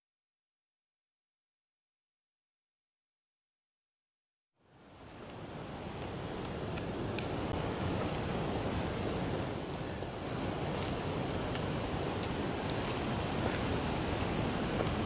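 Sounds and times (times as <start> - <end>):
insects buzzing: 4.6 - 15.0.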